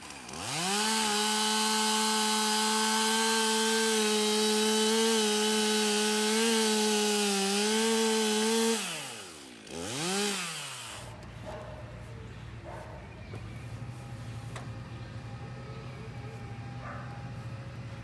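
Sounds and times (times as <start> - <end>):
chainsaw cutting wood: 0.0 - 11.7.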